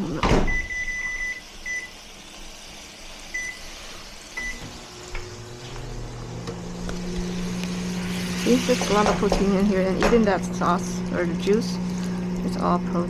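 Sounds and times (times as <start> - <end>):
microwave control panel beeping: 0.0 - 2.1, 3.3 - 3.8, 4.4 - 8.0
microwave oven humming: 0.0 - 13.0.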